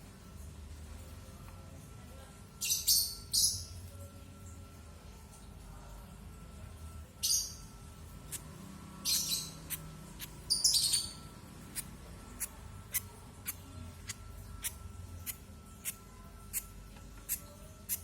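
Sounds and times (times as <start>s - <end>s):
bird chick begging chirps: 9.0s - 16.6s.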